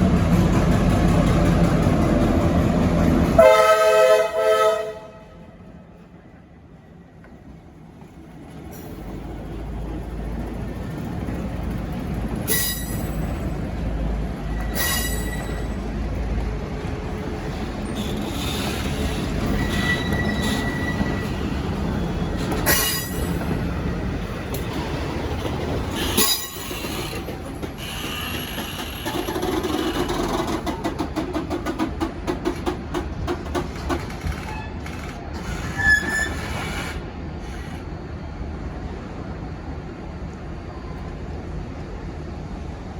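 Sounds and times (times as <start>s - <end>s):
diesel locomotive: 0.0s - 42.9s
wheels squealing on rails: 8.5s - 16.3s, 17.0s - 32.7s, 33.3s - 38.4s
wheels clicking over rail joints: 22.4s - 36.5s.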